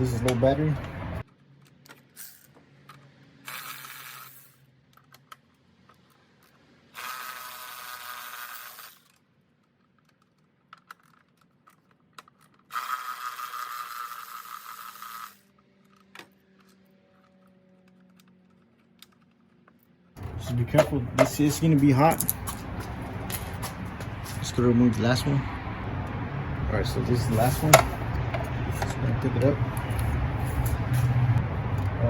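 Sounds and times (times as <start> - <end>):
cordless power tool spinning: 7.0 - 9.0, 12.7 - 15.4
tool and bolts clicking: 19.1 - 22.6, 27.6 - 30.1.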